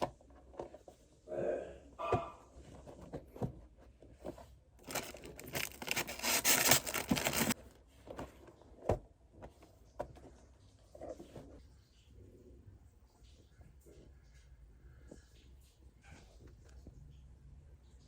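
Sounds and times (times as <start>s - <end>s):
dense rustling and crackling: 2.6s - 11.7s.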